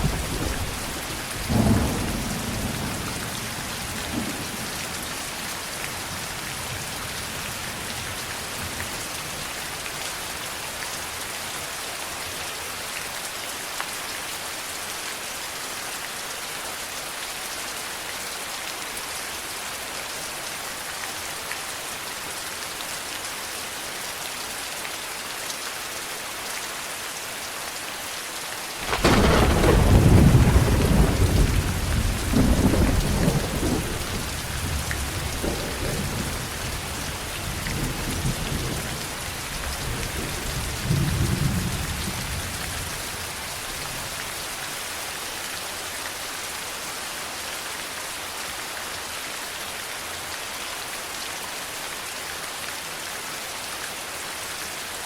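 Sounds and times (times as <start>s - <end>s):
steady rain falling: 0.0s - 55.0s
thunder clap rolling: 28.8s - 34.8s.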